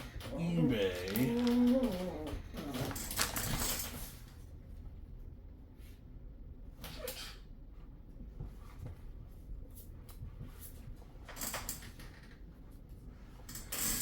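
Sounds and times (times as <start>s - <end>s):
packaging crinkle: 0.8s - 3.6s.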